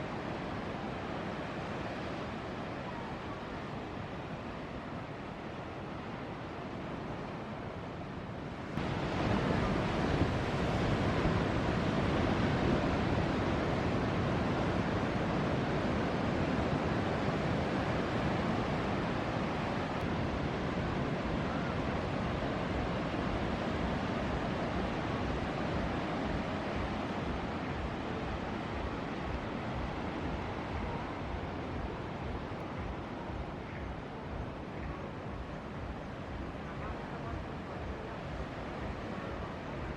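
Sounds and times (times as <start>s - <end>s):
ocean surf breaking: 8.6s - 39.9s
wind buffeting microphone: 8.6s - 39.9s.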